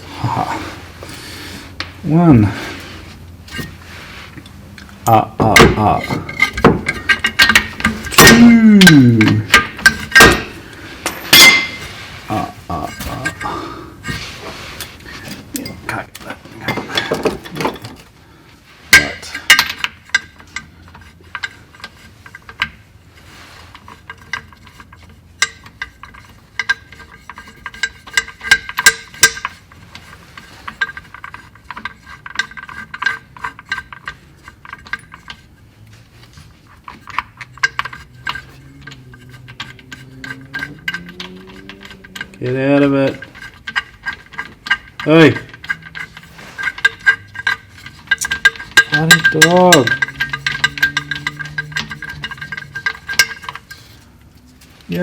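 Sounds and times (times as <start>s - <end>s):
metal clinks: 5.6s - 14.2s, 36.4s - 55.0s
hand ratchet clicking: 5.7s - 11.6s, 23.7s - 35.5s, 36.7s - 54.1s.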